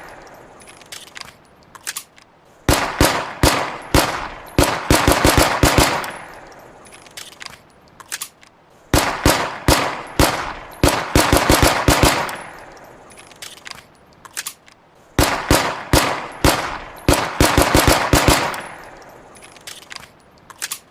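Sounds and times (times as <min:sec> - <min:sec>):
light clicks: 0:00.0 - 0:02.6, 0:06.0 - 0:08.8, 0:12.2 - 0:15.1, 0:18.5 - 0:20.9
pistol shots echoing: 0:02.7 - 0:07.1, 0:08.9 - 0:13.5, 0:15.2 - 0:19.8.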